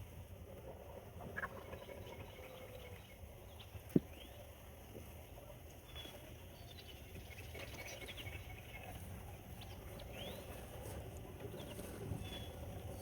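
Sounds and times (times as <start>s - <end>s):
faint bird chirps and whistles: 9.6s - 10.6s, 11.5s - 13.0s.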